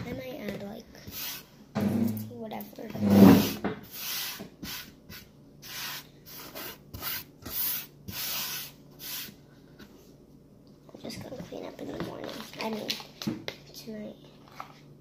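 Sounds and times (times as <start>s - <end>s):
utensil scraping in a bowl: 1.0s - 2.3s, 2.9s - 9.4s.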